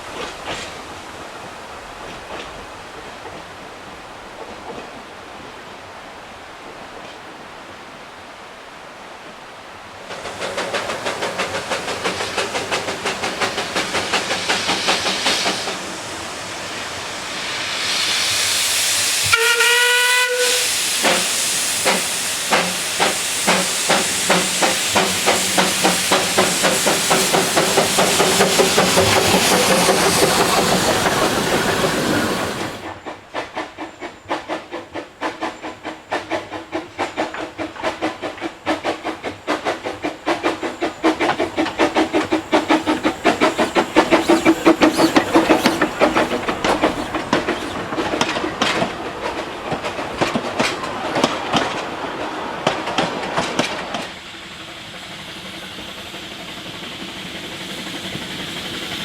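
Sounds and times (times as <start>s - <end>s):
steam hiss: 9.9s - 59.0s
steam locomotive exhaust chuffs: 10.0s - 59.0s
locomotive whistle: 19.2s - 25.6s, 42.6s - 47.8s.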